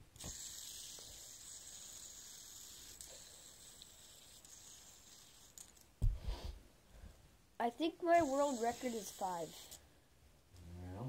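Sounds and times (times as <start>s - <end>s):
spinning bearing hissing: 0.2s - 5.8s, 8.2s - 9.8s.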